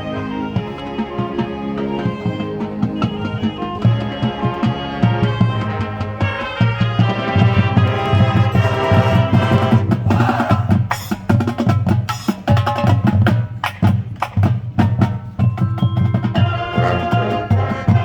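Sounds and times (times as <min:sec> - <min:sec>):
marching band playing: 0:00.0 - 0:18.0
percussion strikes: 0:00.0 - 0:18.0.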